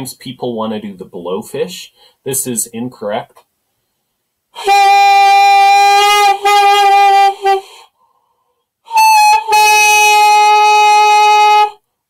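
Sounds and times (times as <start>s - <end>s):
saxophone mouthpiece sustained tone: 4.6s - 7.9s, 8.9s - 11.8s.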